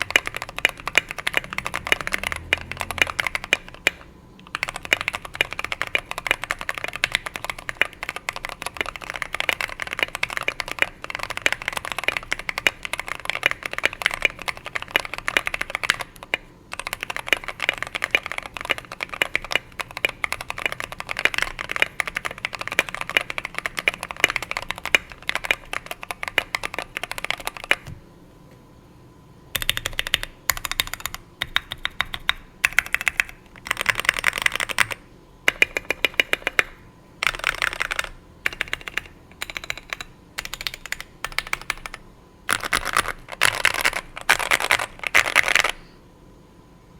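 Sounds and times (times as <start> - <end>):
mechanical keyboard typing: 0.0 - 28.0, 29.6 - 45.8.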